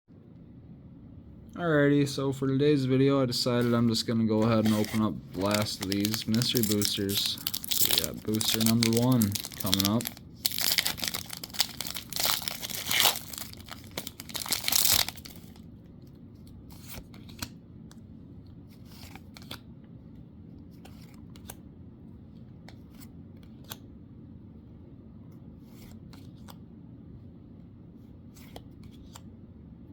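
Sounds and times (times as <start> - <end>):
cards clicking when handled: 4.4 - 15.5
wrapper tearing and crinkling: 4.5 - 15.6.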